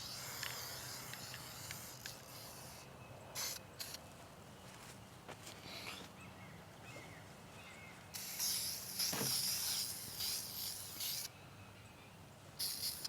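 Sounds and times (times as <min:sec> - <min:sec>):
spray paint can hissing: 0:00.0 - 0:02.8, 0:03.4 - 0:04.0, 0:08.1 - 0:11.3, 0:12.6 - 0:13.0.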